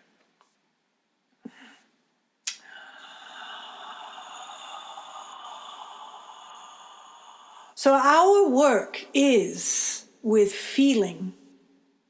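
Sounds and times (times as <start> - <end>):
person breathing out: 2.5 - 7.8
short breath: 2.5 - 7.8.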